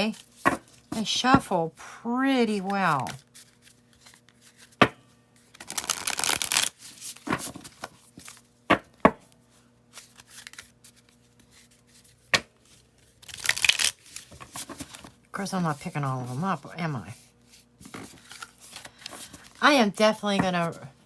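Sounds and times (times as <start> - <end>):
cards shuffling: 2.5 - 4.8, 5.4 - 8.5, 9.9 - 15.2
cards snapping: 5.6 - 6.7, 13.3 - 14.0.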